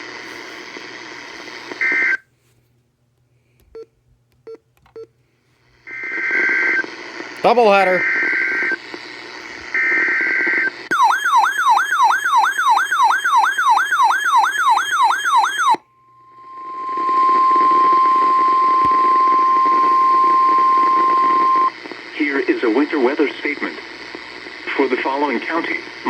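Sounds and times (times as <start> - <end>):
steady alarm tone: 10.9 - 21.7.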